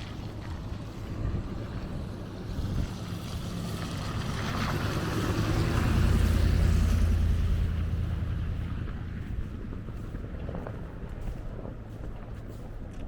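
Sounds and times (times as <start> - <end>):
strong wind on microphone: 0.0 - 3.5.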